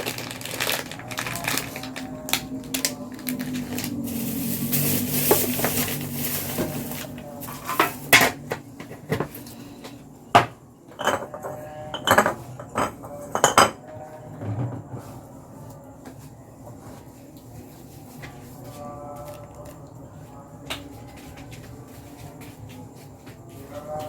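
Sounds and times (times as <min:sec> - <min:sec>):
utensils clinking against dishes: 0:00.5 - 0:14.7
steady hiss: 0:04.0 - 0:08.2.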